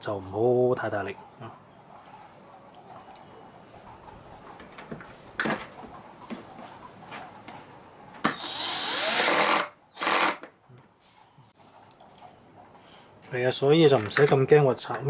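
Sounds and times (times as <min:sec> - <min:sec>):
electric screwdriver driving screw: 0:08.3 - 0:10.5.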